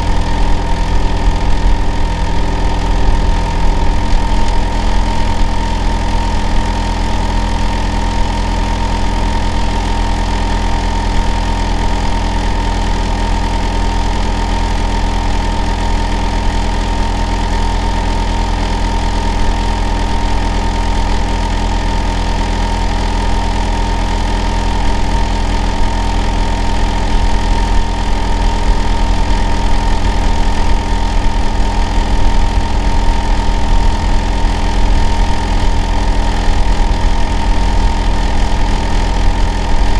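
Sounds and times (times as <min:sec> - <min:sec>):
steady high whine: 0:00.0 - 0:08.3
compressor and fan whir: 0:00.0 - 0:18.6, 0:19.2 - 0:39.9.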